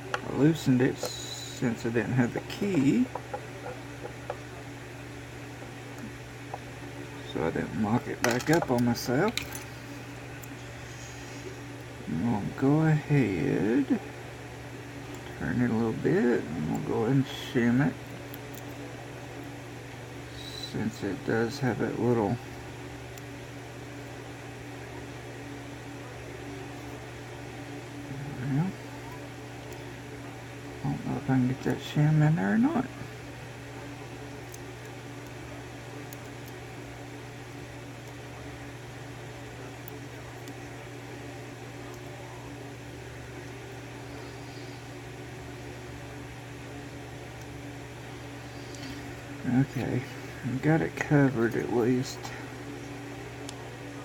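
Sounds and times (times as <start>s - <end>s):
low background hum: 0.0s - 54.0s.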